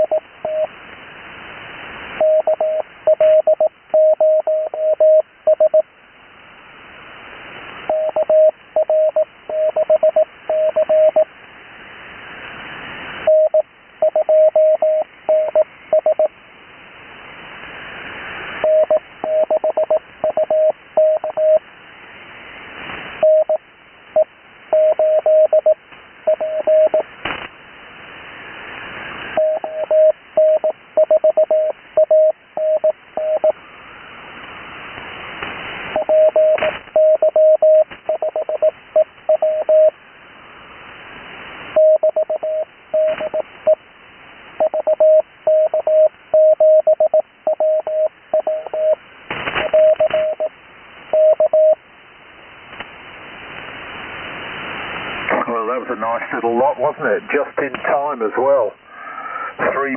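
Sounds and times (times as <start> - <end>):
morse code tone over radio: 0.0 - 0.7, 2.2 - 5.9, 7.9 - 11.3, 13.3 - 16.3, 18.6 - 21.6, 23.2 - 23.6, 24.2 - 27.1, 29.4 - 33.6, 35.9 - 40.0, 41.8 - 43.8, 44.6 - 49.0, 49.6 - 50.5, 51.1 - 51.8
radio band hiss: 33.4 - 37.0, 52.6 - 59.9.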